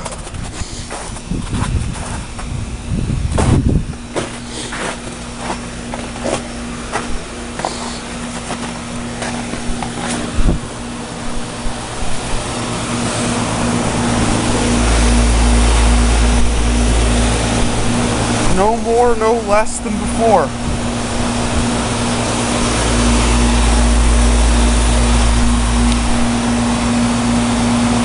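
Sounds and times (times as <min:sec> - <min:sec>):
compressor hum: 0:00.0 - 0:28.0
condenser fan running: 0:00.0 - 0:28.0
low rumble: 0:10.4 - 0:28.0.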